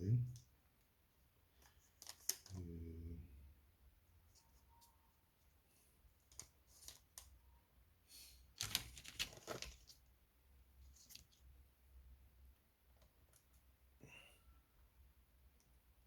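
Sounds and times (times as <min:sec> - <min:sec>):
small parts clicking and rattling: 0:01.6 - 0:02.6, 0:08.6 - 0:10.0.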